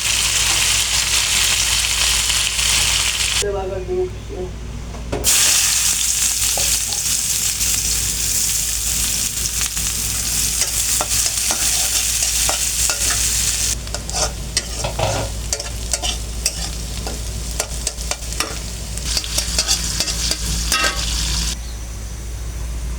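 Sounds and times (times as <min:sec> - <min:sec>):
food sizzling in hot oil: 0:00.0 - 0:03.4, 0:05.2 - 0:21.6
spatula scraping pan: 0:10.2 - 0:21.6.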